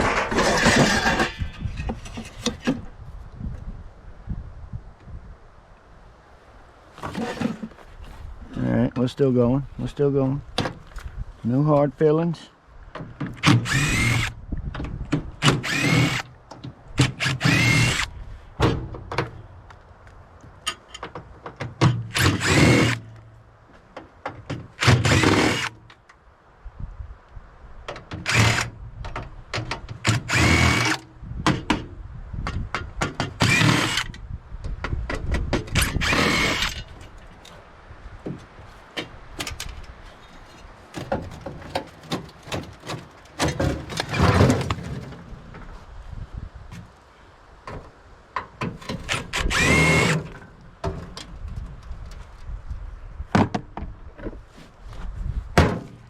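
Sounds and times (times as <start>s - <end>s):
power drill whining: 13.4s - 14.3s, 15.4s - 16.2s, 17.1s - 18.1s, 22.2s - 23.0s, 24.8s - 25.7s, 28.3s - 28.7s, 30.0s - 31.0s, 33.4s - 34.1s, 35.8s - 36.8s, 49.2s - 50.3s.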